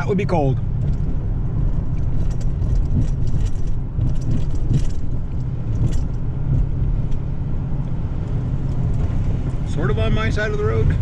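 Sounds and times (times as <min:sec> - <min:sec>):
road and engine rumble: 0:00.0 - 0:11.0
short rattles: 0:00.7 - 0:07.2.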